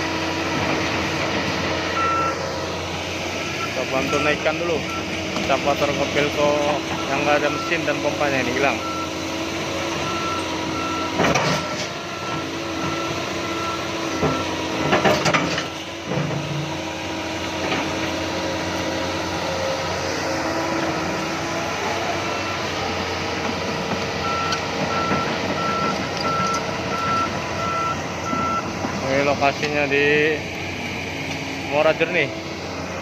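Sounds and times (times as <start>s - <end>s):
heavy diesel machinery running: 0.0s - 33.0s
backup alarm beeping: 2.0s - 2.4s, 24.2s - 28.7s.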